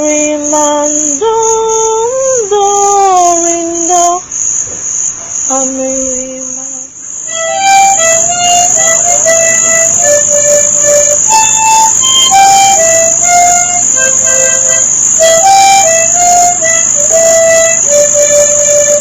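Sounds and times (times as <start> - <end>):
steady high-pitched whine: 0.0 - 19.0
instrumental melody of held notes: 7.2 - 19.0.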